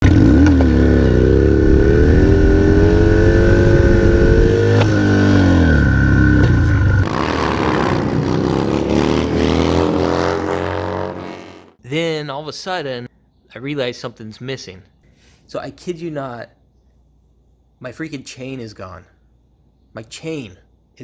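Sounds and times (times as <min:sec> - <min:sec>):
motorcycle engine revving: 0:00.0 - 0:11.8
even rushing noise: 0:06.0 - 0:11.7.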